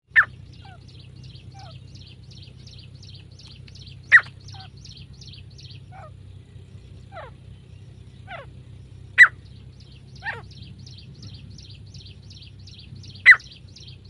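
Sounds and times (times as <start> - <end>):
francolin calling: 0.0 - 14.0
high chirps: 0.1 - 6.1, 6.8 - 14.0
low steady hum: 0.1 - 14.0.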